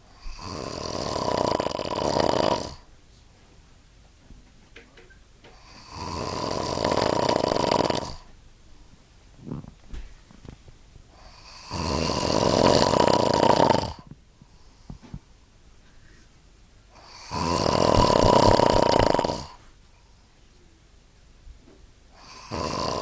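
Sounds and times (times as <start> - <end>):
person snoring loudly: 0.2 - 2.9, 5.6 - 8.3, 9.4 - 9.7, 11.2 - 14.1, 17.0 - 19.6, 22.2 - 23.0.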